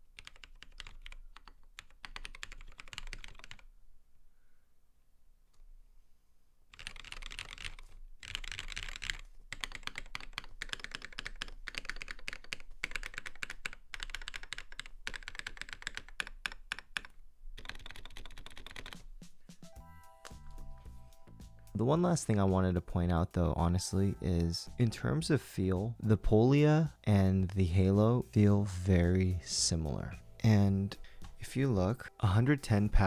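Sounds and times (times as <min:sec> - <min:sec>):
mechanical keyboard typing: 0:00.0 - 0:03.7, 0:06.7 - 0:19.2.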